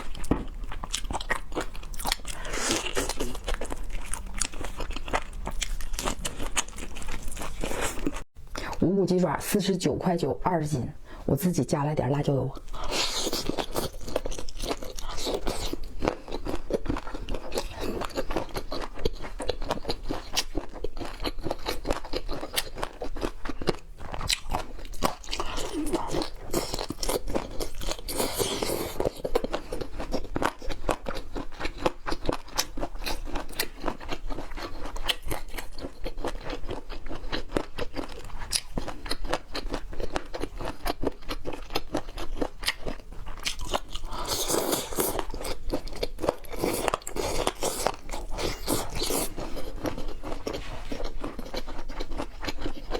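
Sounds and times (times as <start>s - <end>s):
crunchy chewing close up: 0.0s - 8.8s, 12.6s - 52.9s.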